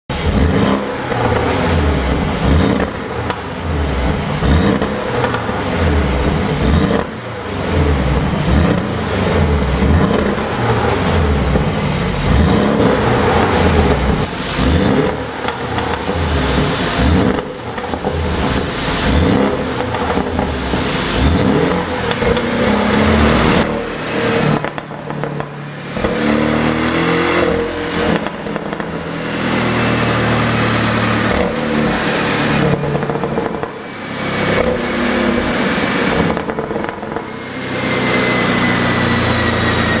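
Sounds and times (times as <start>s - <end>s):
exhaust pops and crackles: 0.1s - 23.7s, 24.4s - 26.4s, 27.4s - 29.4s, 31.0s - 33.8s, 36.1s - 37.3s
car engine revving: 0.1s - 40.0s.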